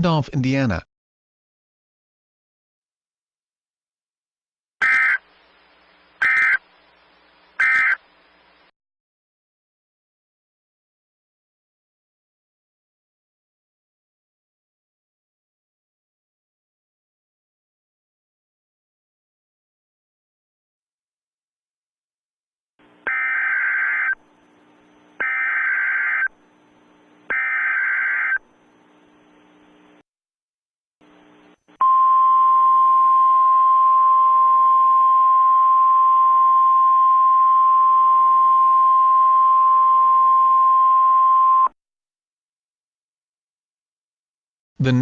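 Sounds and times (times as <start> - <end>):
screechy data tones: 4.8 - 5.2, 6.2 - 6.6, 7.6 - 8.0, 23.0 - 24.2, 25.2 - 26.4, 27.3 - 28.4
faint radio hiss: 4.9 - 8.7, 22.8 - 30.0, 31.0 - 31.7.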